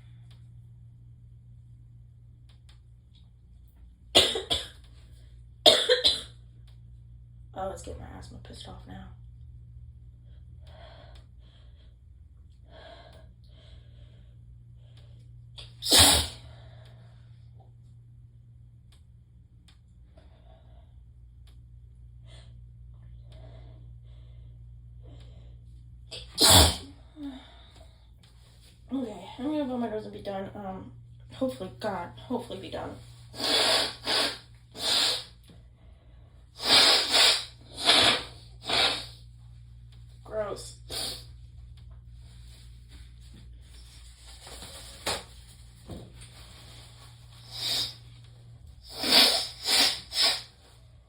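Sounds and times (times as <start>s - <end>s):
loud sneeze: 15.6s - 16.4s, 26.1s - 26.9s, 33.4s - 35.3s, 36.6s - 39.2s, 40.9s - 41.2s, 48.8s - 50.5s
person blowing nose: 15.6s - 16.5s, 26.2s - 26.9s, 33.3s - 35.4s, 36.6s - 39.2s, 40.9s - 41.3s, 47.4s - 48.0s, 48.8s - 50.6s.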